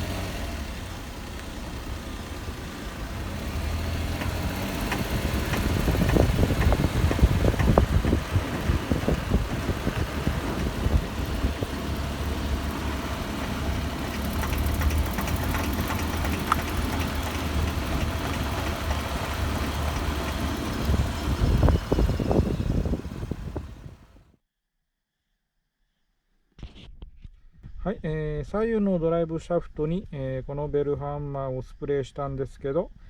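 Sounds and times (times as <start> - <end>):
car engine and road noise: 0.0 - 24.3
drive shaft knocking: 2.6 - 24.0.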